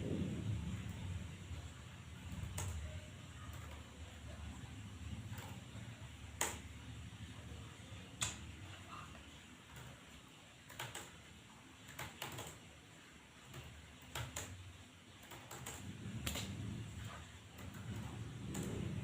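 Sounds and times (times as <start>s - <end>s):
low background rumble: 0.0s - 9.2s, 15.7s - 19.0s
computer key clicks: 10.7s - 11.2s.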